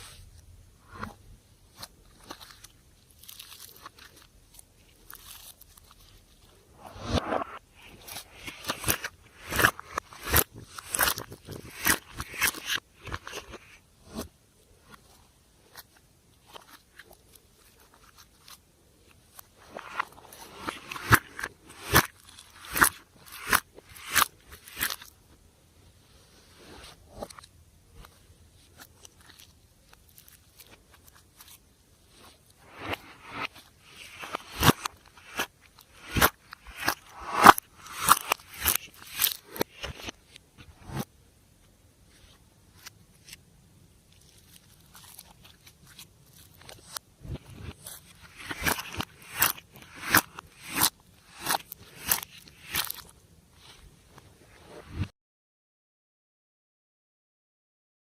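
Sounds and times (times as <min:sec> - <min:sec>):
slime crackling and popping: 0:33.2 - 0:39.9, 0:47.8 - 0:53.1.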